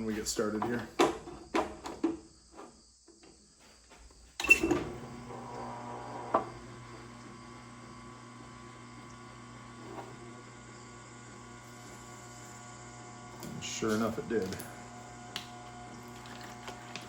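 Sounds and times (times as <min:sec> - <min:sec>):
electric motor humming: 0:04.8 - 0:17.0.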